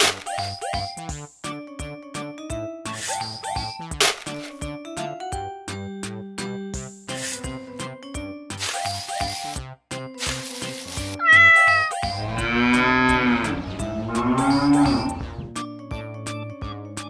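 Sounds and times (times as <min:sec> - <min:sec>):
animal calls: 0:11.2 - 0:12.1.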